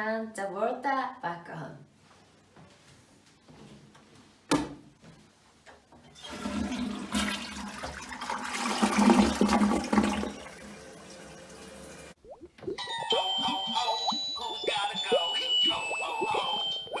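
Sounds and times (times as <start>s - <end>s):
toilet flush click: 6.1s - 12.2s
toilet water rushing: 6.1s - 12.2s.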